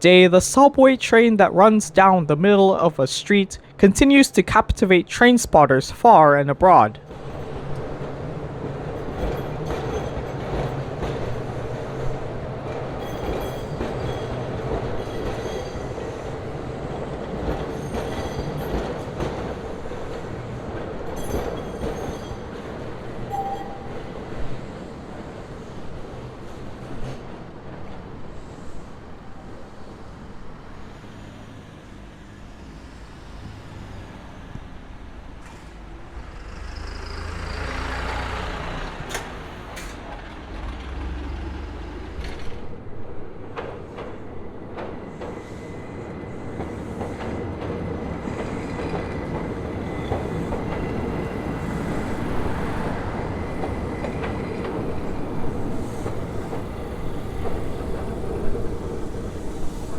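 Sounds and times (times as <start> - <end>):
electric train rumbling on rails: 0.0 - 59.9
road traffic: 29.5 - 44.4.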